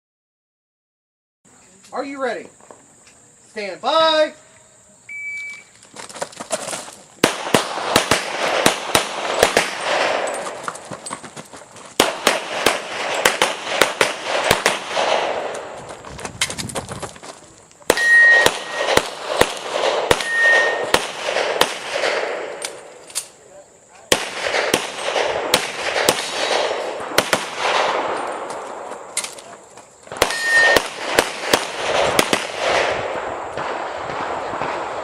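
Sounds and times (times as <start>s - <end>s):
pistol shots echoing: 7.2s - 10.7s, 12.0s - 15.8s, 17.9s - 22.9s, 24.1s - 29.2s, 30.1s - 35.0s.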